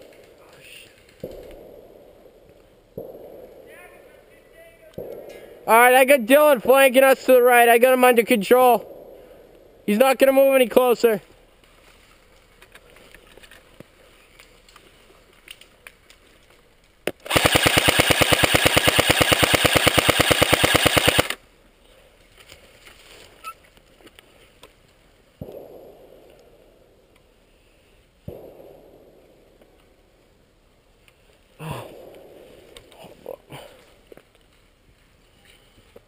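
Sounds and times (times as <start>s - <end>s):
airsoft gun full-auto burst: 17.1s - 21.4s.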